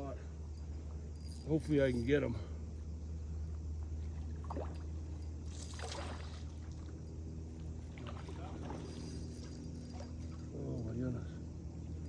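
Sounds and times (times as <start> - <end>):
water splashing: 5.5 - 6.7.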